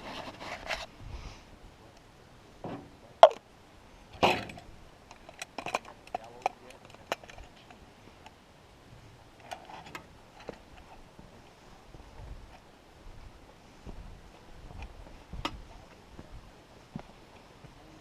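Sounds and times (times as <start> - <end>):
clicks and knocks from gear: 4.2 - 7.8.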